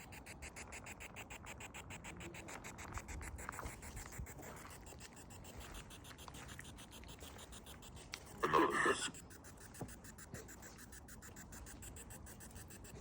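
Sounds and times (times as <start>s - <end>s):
faint scratches: 0.0s - 13.0s
pulsing faint hiss: 0.0s - 13.0s.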